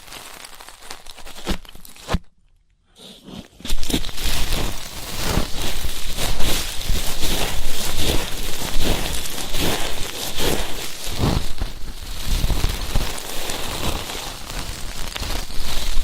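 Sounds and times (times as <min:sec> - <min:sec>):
ear pick scratching microphone: 0:03.0 - 0:16.0.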